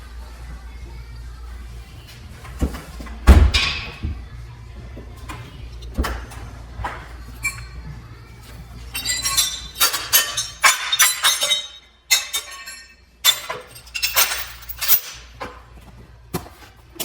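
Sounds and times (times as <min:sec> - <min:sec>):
hard objects clinking: 0:08.8 - 0:15.3.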